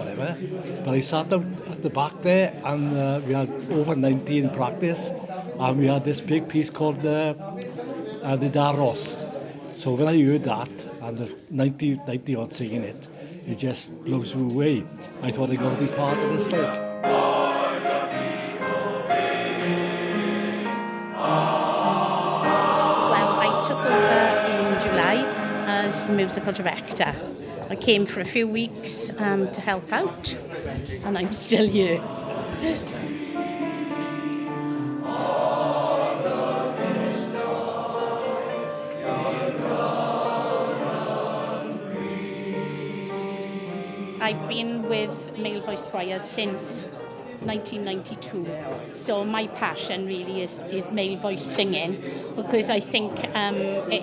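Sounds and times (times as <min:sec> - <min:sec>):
male voice choir singing: 0:15.2 - 0:27.7, 0:31.6 - 0:44.7.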